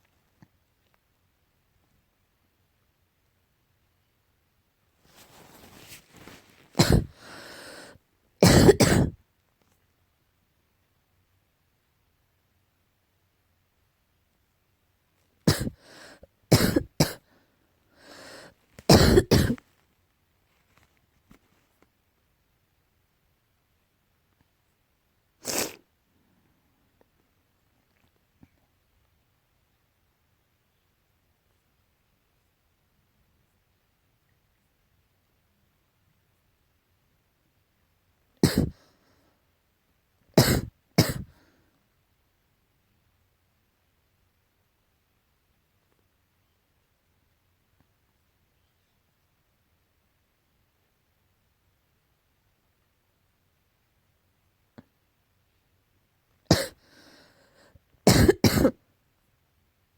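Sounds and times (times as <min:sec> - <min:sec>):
breath intake: 0:05.2 - 0:09.1, 0:15.5 - 0:17.3, 0:17.9 - 0:19.6, 0:38.4 - 0:38.8
person coughing: 0:06.8 - 0:09.2, 0:15.5 - 0:15.8, 0:16.5 - 0:17.2, 0:18.0 - 0:19.6, 0:38.4 - 0:38.8, 0:40.4 - 0:41.3, 0:56.5 - 0:56.8, 0:58.1 - 0:58.8.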